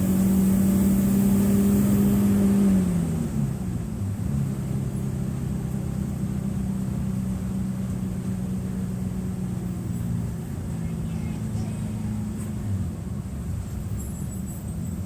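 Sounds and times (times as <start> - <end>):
bus diesel engine droning: 0.0 - 15.0.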